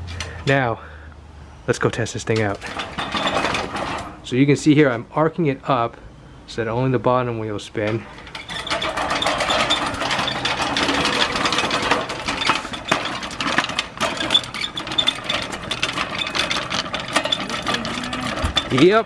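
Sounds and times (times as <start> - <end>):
reel mower whirring clatter: 2.6 - 4.2, 8.1 - 19.0.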